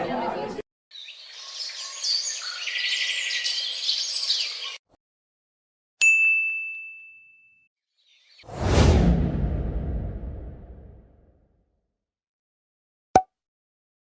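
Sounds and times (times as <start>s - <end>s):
birds chirping and trilling: 0.9s - 4.8s, 8.0s - 8.5s
bell-like ding: 6.0s - 7.6s.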